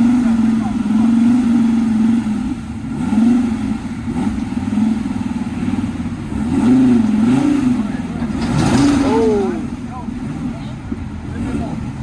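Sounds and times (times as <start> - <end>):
car engine revving: 0.0 - 12.0.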